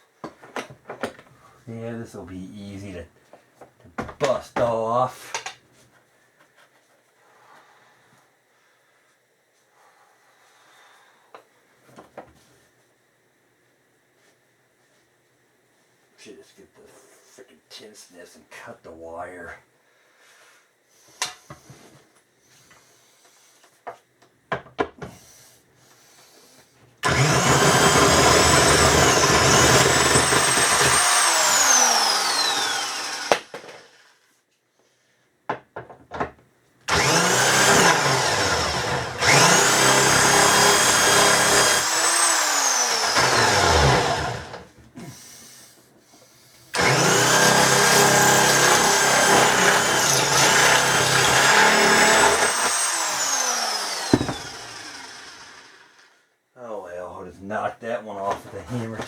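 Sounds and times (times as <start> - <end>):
impact wrench whirring: 27.0 - 34.1, 36.9 - 44.6, 46.7 - 56.0.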